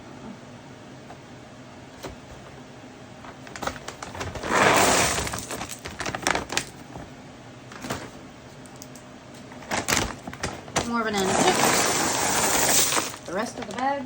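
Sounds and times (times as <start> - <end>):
seeds pouring rattle: 4.5 - 5.8, 11.3 - 13.3.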